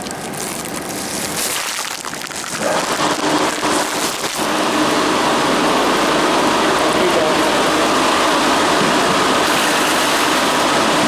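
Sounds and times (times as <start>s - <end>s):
water splashing and spraying: 0.2s - 11.0s.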